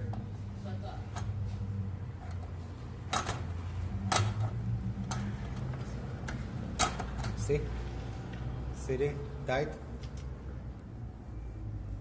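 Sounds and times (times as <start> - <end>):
metal clicks and knocks: 3.1 - 7.5.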